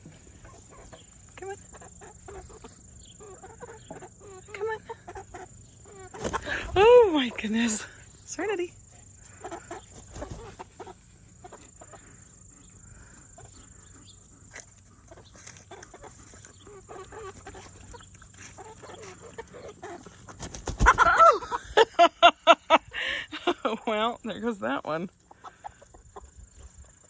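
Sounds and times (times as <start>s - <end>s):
chickens clucking quietly: 0.0s - 27.0s
chickens squawking loudly: 0.3s - 7.8s, 9.0s - 23.4s, 25.2s - 27.0s.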